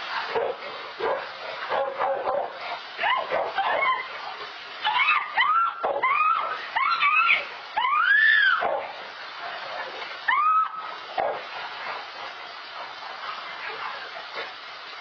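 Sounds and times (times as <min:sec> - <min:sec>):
steady hiss: 0:00.0 - 0:15.0
woman screaming: 0:04.8 - 0:08.6, 0:10.3 - 0:10.8.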